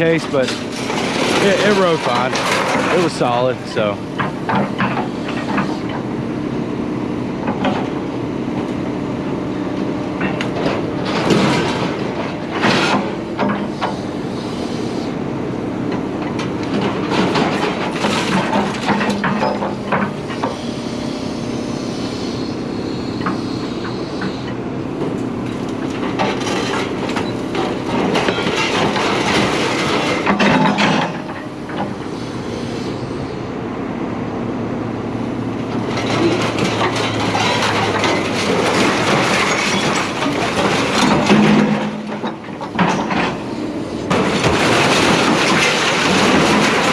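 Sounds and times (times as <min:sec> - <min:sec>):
steady engine hum: 0:00.0 - 0:46.9.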